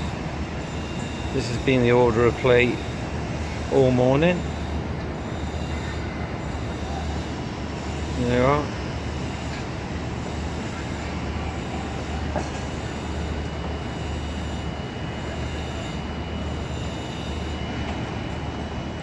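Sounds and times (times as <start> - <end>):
faint high whine: 0.0 - 19.0.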